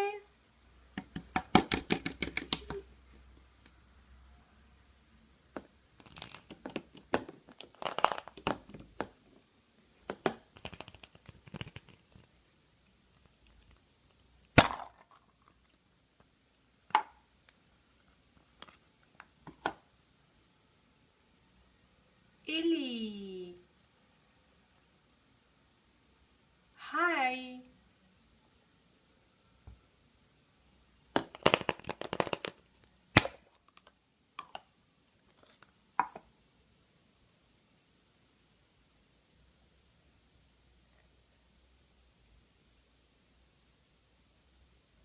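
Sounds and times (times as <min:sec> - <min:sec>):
toy egg cracking open: 0:06.0 - 0:08.6, 0:14.6 - 0:15.5, 0:31.2 - 0:32.6
crinkling and cracking: 0:06.0 - 0:08.7, 0:10.2 - 0:12.4, 0:31.2 - 0:34.6.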